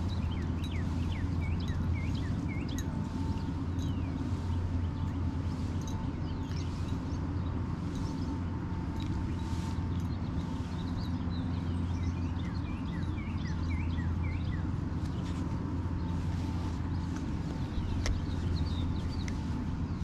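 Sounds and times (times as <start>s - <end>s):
small birds chirping: 0.0s - 20.0s
steady low rumble: 0.0s - 20.0s.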